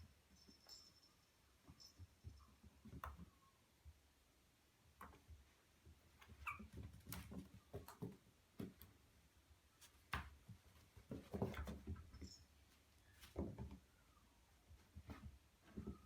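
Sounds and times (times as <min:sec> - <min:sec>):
puppies bumping and rustling: 0:05.0 - 0:09.0, 0:09.8 - 0:14.0, 0:14.7 - 0:16.0
puppy squeak: 0:06.4 - 0:06.8.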